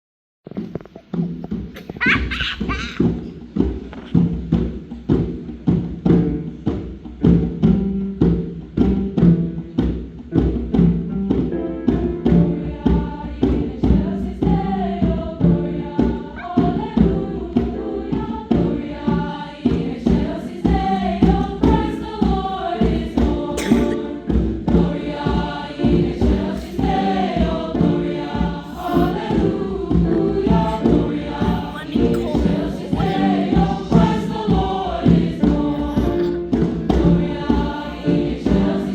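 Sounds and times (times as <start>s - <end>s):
choir singing: 12.4s - 38.9s
rhythmic beat: 21.6s - 38.9s.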